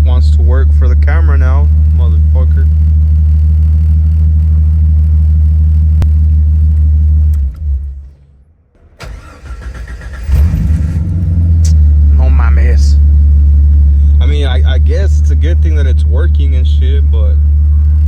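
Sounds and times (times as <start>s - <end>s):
car engine idling: 0.0s - 18.0s
starter motor cranking: 9.0s - 11.2s.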